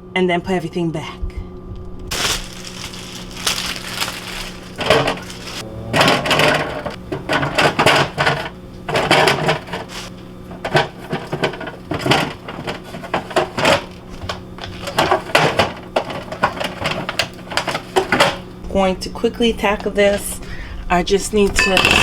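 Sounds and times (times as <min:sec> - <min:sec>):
refrigerator hum: 0:00.0 - 0:22.0
plastic and glass clattering: 0:02.1 - 0:18.5.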